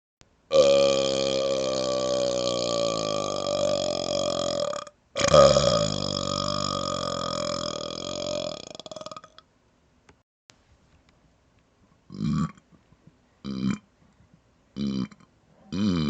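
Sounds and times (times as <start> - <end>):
man belching loudly: 0.5 - 9.4, 12.1 - 12.6, 13.4 - 13.9, 14.8 - 16.0.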